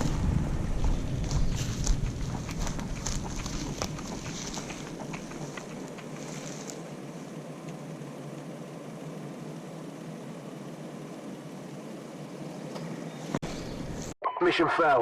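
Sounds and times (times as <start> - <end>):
wind buffeting microphone: 0.0 - 6.1.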